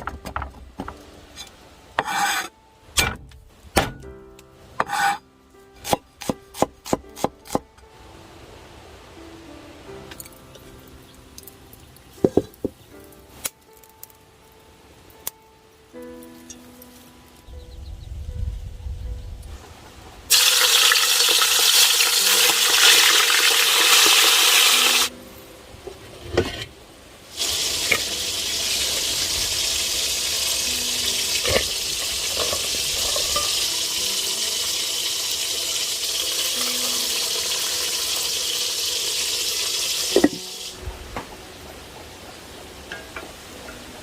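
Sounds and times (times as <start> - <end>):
food sizzling in a pan: 20.3 - 25.1, 27.3 - 40.8.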